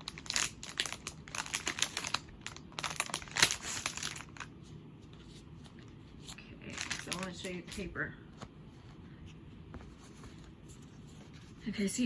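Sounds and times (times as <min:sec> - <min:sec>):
paper wrapper crinkling: 0:00.0 - 0:04.6, 0:05.8 - 0:07.5.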